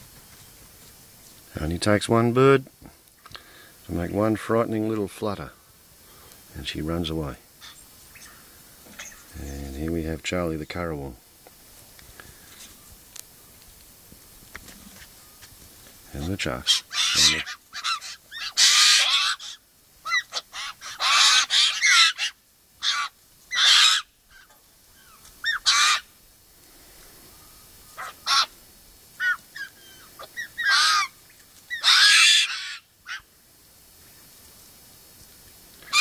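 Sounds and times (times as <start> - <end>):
large birds honking: 16.6 - 24.5, 25.2 - 26.2, 27.9 - 28.6, 29.2 - 33.3.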